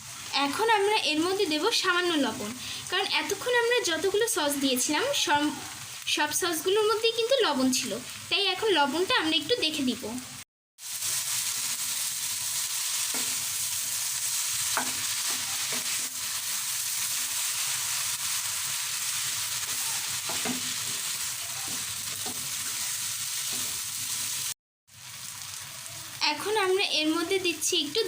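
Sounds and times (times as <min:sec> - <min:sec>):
noodles sizzling in a pan: 0:00.0 - 0:28.0
spatula scraping a pan: 0:14.5 - 0:24.5.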